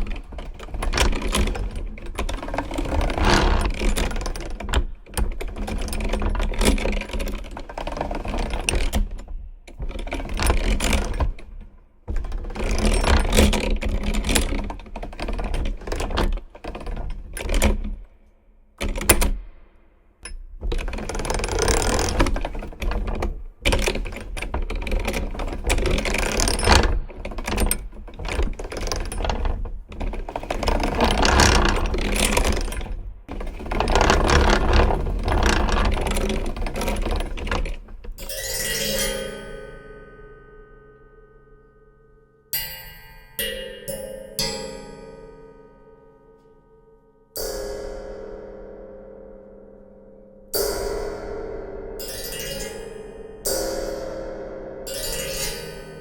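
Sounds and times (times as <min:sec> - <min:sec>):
mechanical gears clicking and rattling: 0:00.0 - 0:18.2, 0:18.8 - 0:19.5, 0:20.2 - 0:39.0.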